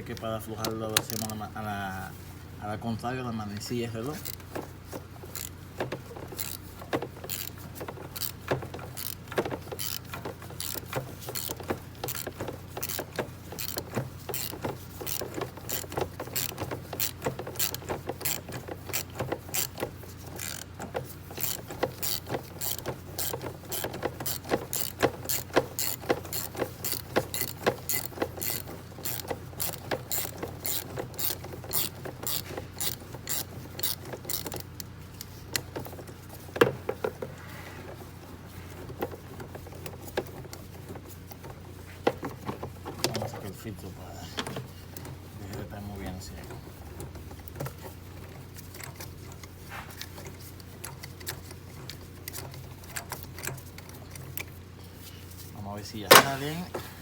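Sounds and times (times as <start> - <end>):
ratchet wrench clicking: 0.2 - 1.4, 4.0 - 4.4, 5.3 - 5.6, 6.2 - 37.2, 44.4 - 54.6.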